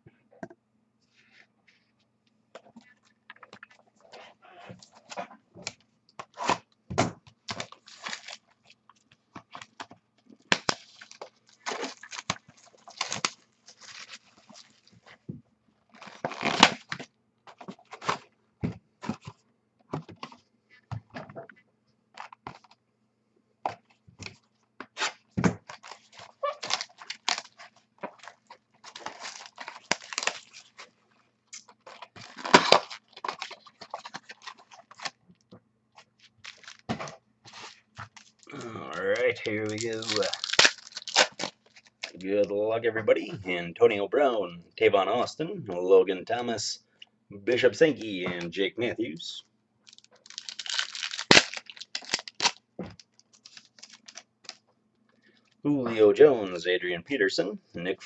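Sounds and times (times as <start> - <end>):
card packaging tearing and crinkling: 7.4 - 8.8, 9.5 - 15.0, 15.9 - 18.3, 25.0 - 35.2, 36.0 - 42.2, 49.9 - 54.6.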